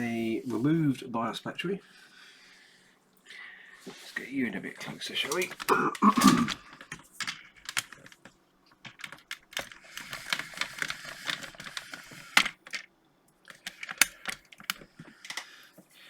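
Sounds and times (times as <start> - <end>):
handling clicks and taps: 4.8 - 15.9.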